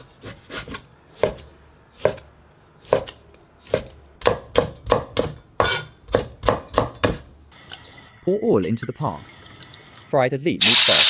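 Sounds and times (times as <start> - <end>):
knife chopping meat: 0.0 - 7.3.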